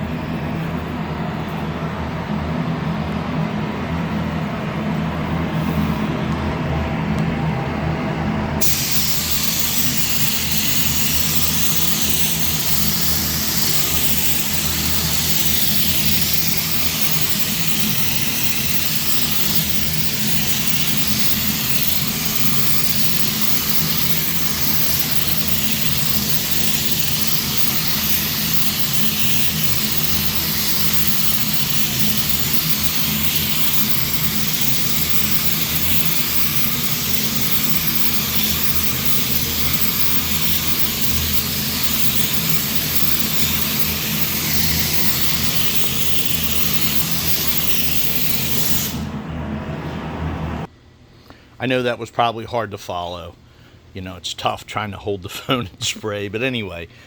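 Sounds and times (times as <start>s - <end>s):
low machine hum: 0.0s - 52.2s
spray gun hissing: 8.6s - 49.2s.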